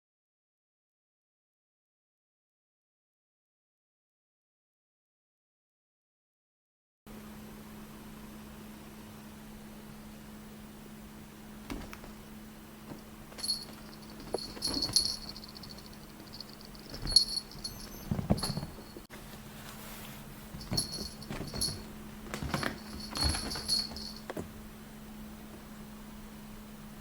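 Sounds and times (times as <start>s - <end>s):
faint steady hum: 7.1s - 27.0s
small bell jingling: 12.9s - 19.1s, 20.6s - 24.3s.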